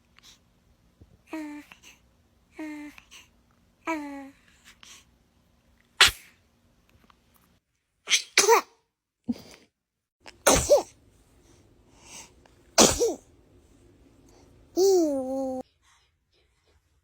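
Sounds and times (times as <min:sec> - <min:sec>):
baby sneezing: 0:06.0 - 0:06.4, 0:08.1 - 0:08.8, 0:10.4 - 0:11.0, 0:12.8 - 0:13.2.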